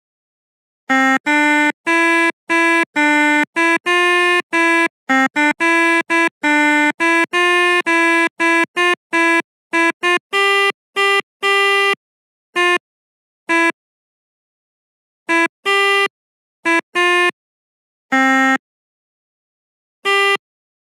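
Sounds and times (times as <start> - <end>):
melodica playing reedy notes: 0.9 - 12.0, 12.6 - 12.8, 13.5 - 13.8, 15.3 - 17.4, 18.1 - 18.6, 20.0 - 20.4.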